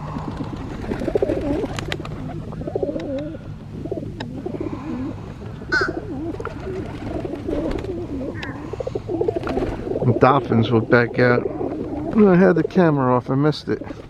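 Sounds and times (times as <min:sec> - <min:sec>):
pigeons cooing: 0:00.0 - 0:14.0.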